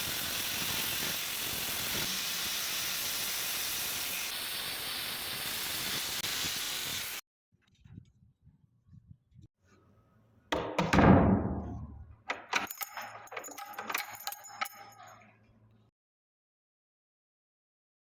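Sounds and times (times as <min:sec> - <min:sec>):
loud knock: 0:10.5 - 0:12.1
door lock clicking and jingling: 0:11.6 - 0:15.2.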